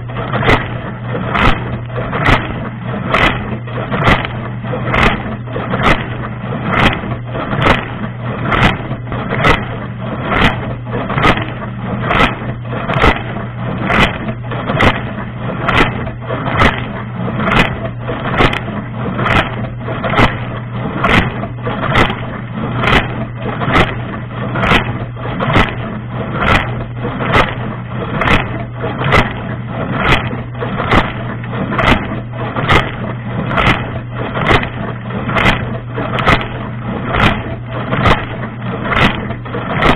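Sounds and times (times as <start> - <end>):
dishwasher motor hum: 0.0 - 39.9
water spraying in dishwasher: 0.0 - 39.9.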